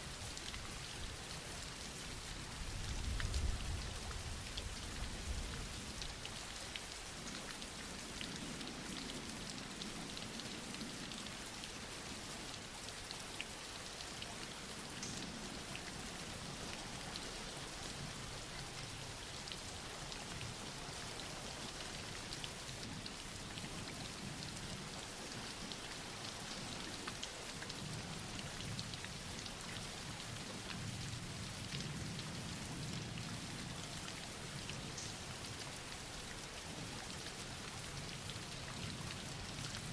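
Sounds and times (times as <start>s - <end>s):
soft rain falling: 0.0s - 39.9s
raindrops ticking: 15.0s - 15.4s, 34.7s - 35.2s.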